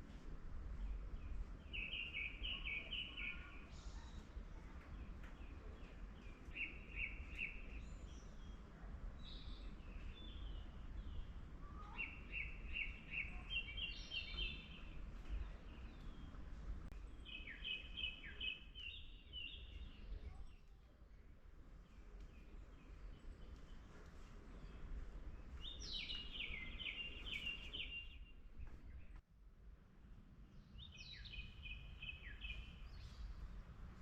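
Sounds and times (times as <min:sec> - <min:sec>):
birds chirping: 0:09.2 - 0:20.7, 0:21.8 - 0:29.2, 0:30.6 - 0:33.4.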